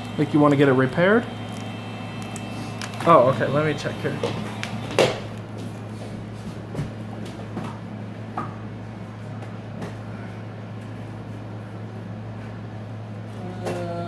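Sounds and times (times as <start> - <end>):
low hum: 0.0 - 9.3.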